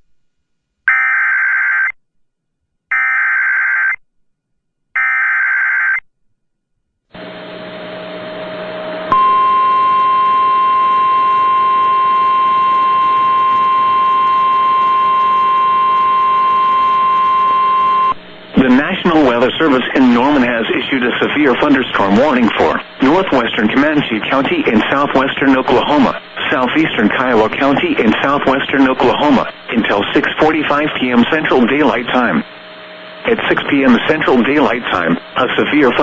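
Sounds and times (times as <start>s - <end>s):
radio static: 11.7s - 36.0s.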